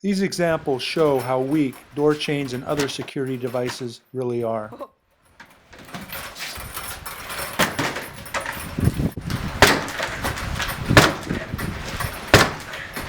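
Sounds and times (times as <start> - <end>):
door chain rattling: 0.3 - 4.6, 5.2 - 13.0
heavy thuds against door: 5.4 - 13.0.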